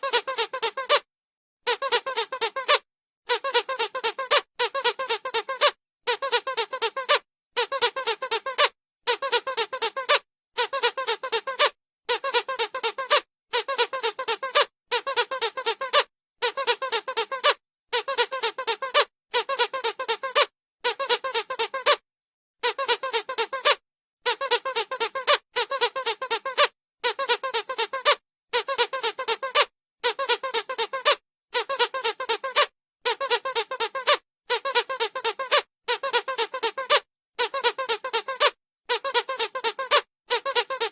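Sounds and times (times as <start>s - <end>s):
squeaky dog toy squeaking: 0.0s - 22.0s, 22.6s - 40.9s.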